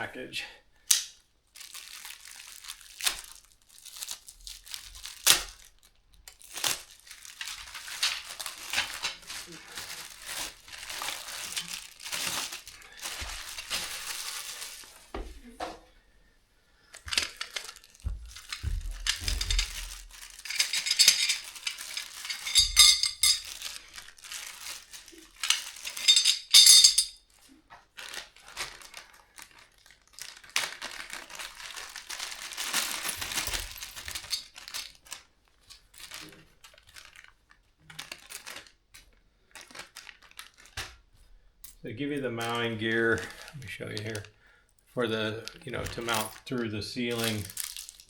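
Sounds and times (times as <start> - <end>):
plastic packaging rustling: 0.9 - 15.6, 16.8 - 41.4, 42.0 - 48.0
dull thuds of parts set down: 18.0 - 23.5
metal hardware clinking: 18.5 - 23.6, 25.4 - 27.2.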